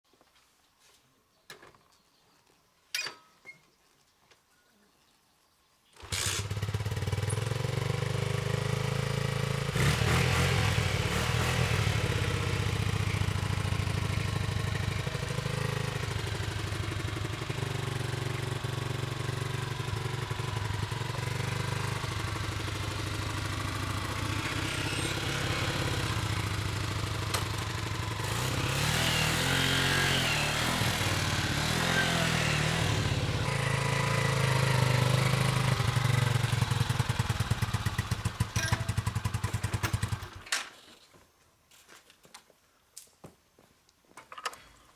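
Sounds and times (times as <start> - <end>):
small motorcycle engine running: 6.0 - 40.4.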